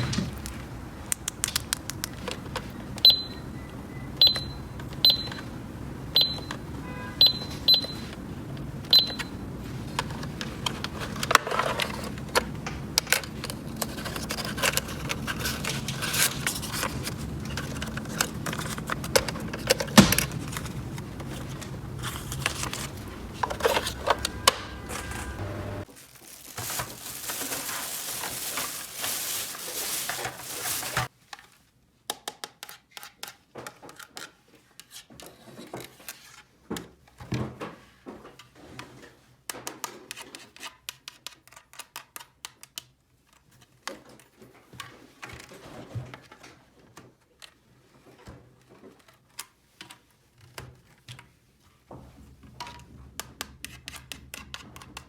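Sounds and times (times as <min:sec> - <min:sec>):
high electronic toy beeps: 0:03.0 - 0:05.5, 0:06.1 - 0:06.6, 0:07.2 - 0:08.1, 0:08.9 - 0:09.4
rustling: 0:07.4 - 0:31.1.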